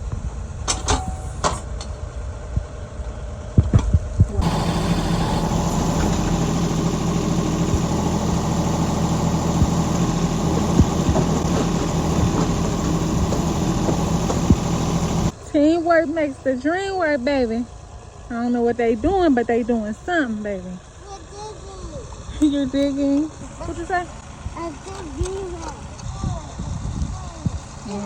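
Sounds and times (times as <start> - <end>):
digging machine engine running: 4.3 - 15.4
knocks and clicks: 9.6 - 15.3.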